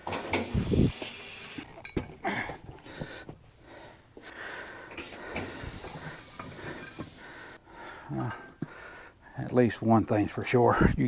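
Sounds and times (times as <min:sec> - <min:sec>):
metal tools knocking and scraping: 0:01.7 - 0:02.2.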